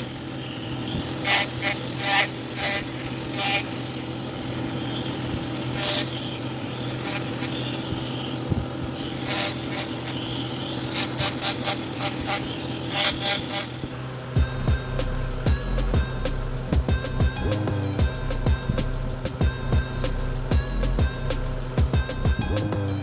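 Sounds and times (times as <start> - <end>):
tool scraping wood: 0.0 - 14.1
steady low hum: 0.0 - 23.0.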